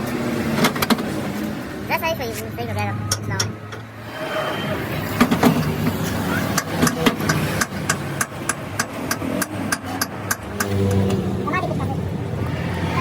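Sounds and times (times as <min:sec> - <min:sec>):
rapid sharp metal knocks: 0:05.2 - 0:11.1.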